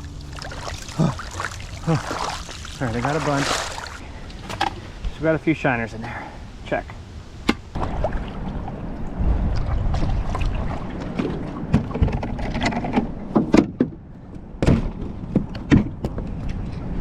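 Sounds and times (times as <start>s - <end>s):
wind rumbling on microphone: 7.8s - 13.3s.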